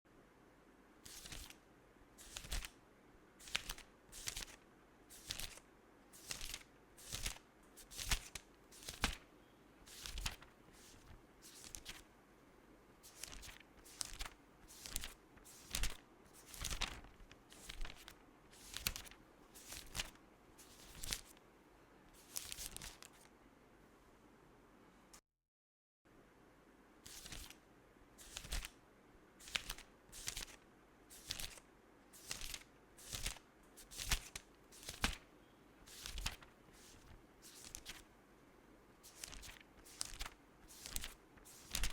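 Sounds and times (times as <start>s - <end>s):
book pages turning: 2.2s - 2.7s, 3.4s - 5.6s, 6.2s - 9.2s, 9.9s - 12.0s, 13.0s - 21.4s, 22.2s - 23.3s, 28.2s - 28.7s, 29.4s - 31.6s, 32.2s - 35.2s, 35.9s - 38.0s, 39.0s - 41.9s.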